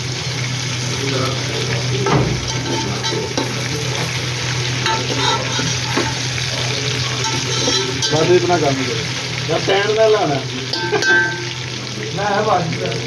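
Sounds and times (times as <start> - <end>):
food sizzling in hot oil: 0.0 - 13.0
utensil scraping a pan: 2.0 - 4.1, 4.8 - 6.3, 7.0 - 8.4.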